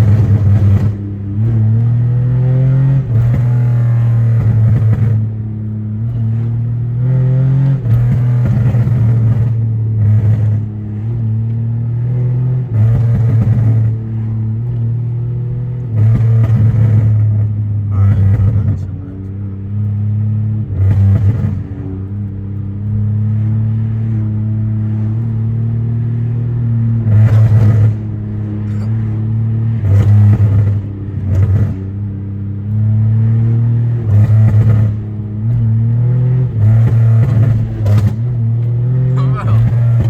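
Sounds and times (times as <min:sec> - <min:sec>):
car engine droning: 0:00.0 - 0:40.0.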